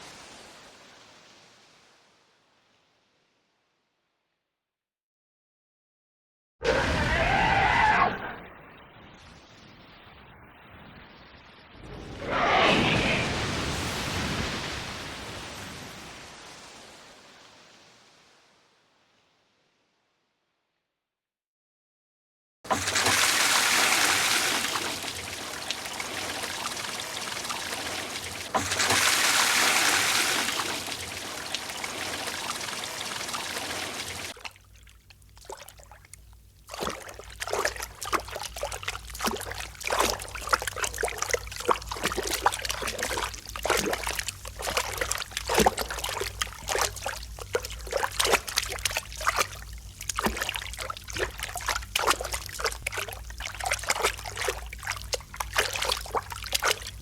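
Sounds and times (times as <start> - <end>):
running water rushing: 22.7 - 57.0
water splashing: 22.7 - 57.0
water trickling and dripping: 22.7 - 57.0.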